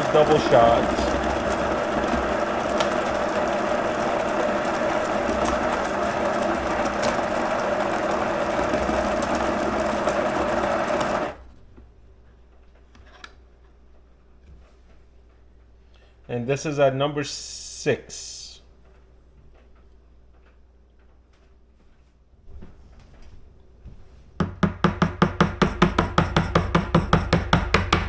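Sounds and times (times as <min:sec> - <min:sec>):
electric coffee grinder running: 0:00.0 - 0:11.4.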